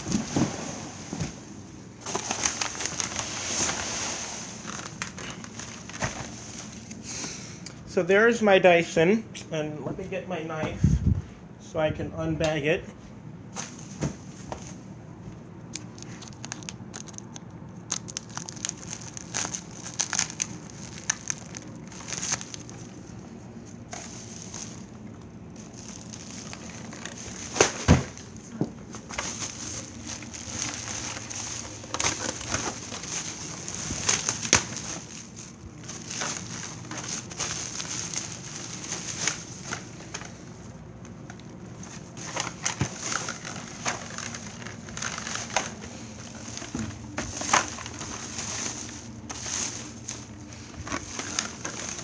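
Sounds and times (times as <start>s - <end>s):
plastic packaging crinkling: 2.0s - 7.1s, 15.7s - 23.0s, 23.7s - 28.3s, 28.9s - 40.4s, 41.8s - 52.0s.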